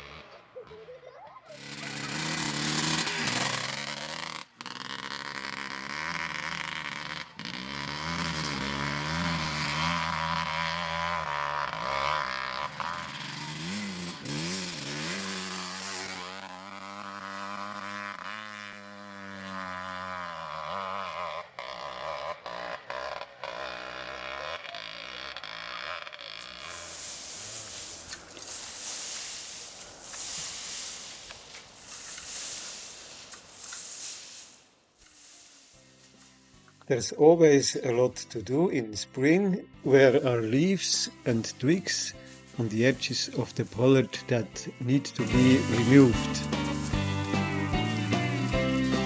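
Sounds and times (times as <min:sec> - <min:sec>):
motorbike engine revving: 0:00.0 - 0:39.0, 0:39.8 - 0:49.0.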